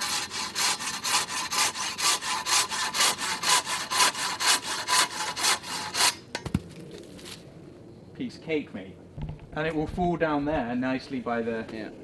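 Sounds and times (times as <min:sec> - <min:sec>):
hand saw cutting a log: 0:00.0 - 0:06.2.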